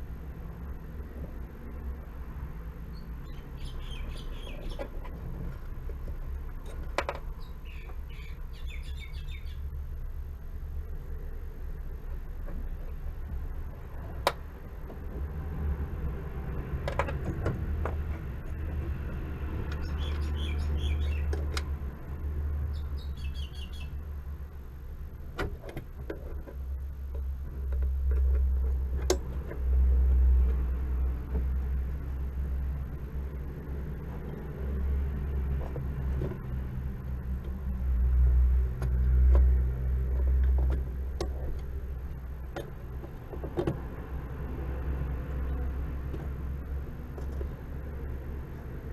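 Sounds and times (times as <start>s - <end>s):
clicks and knocks of pedal parts: 16.7s - 19.9s.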